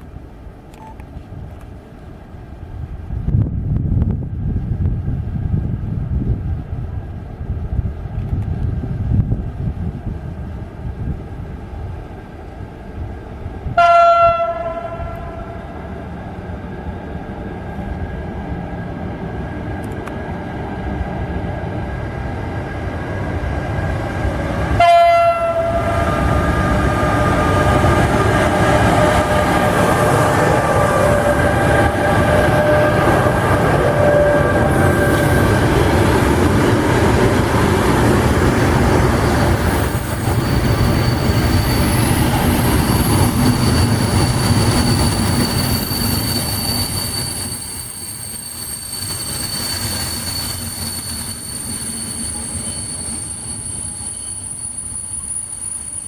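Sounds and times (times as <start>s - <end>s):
train rumbling and clattering: 0.0s - 56.0s
train horn blast: 13.7s - 15.9s, 24.8s - 35.6s
high steady squeal: 25.4s - 56.0s.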